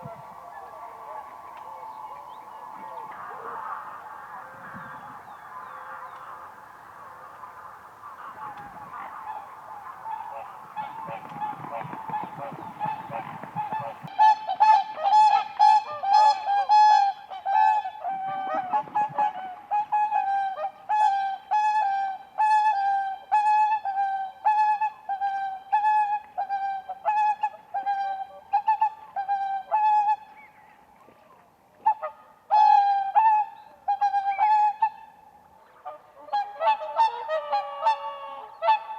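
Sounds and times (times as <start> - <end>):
swans trumpeting honks: 0.0 - 14.4, 35.8 - 38.9.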